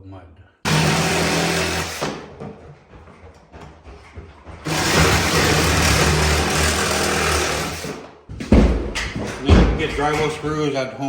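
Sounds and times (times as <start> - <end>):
power tool motor humming: 0.7 - 2.4, 4.7 - 8.2.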